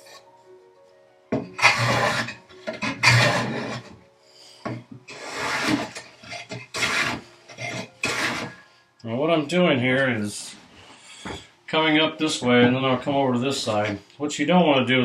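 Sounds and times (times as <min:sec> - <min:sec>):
hand plane shaving wood: 0:01.6 - 0:03.9, 0:05.1 - 0:08.6.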